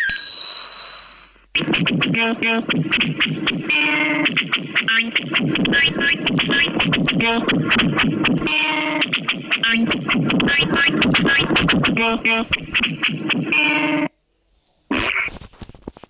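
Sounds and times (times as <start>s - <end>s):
electronic music with clicky beat: 1.6s - 14.1s
falling scratch-like tones: 1.6s - 14.1s.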